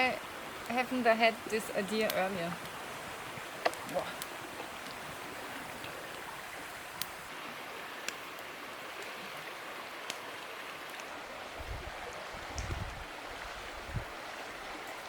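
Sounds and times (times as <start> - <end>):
fire popping: 0.0 - 7.3, 10.0 - 14.1
campfire crackling: 0.0 - 15.0.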